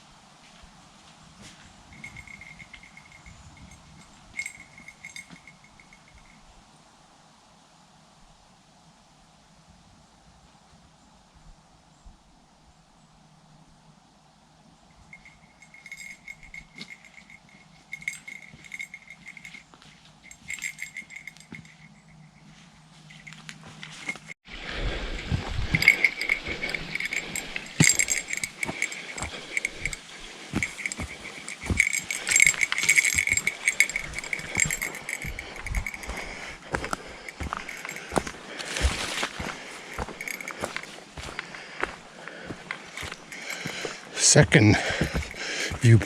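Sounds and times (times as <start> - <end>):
footsteps crunching on trail: 0.4 - 6.3, 15.1 - 46.0
metallic jingling: 1.9 - 6.4, 14.9 - 24.4, 25.1 - 46.0.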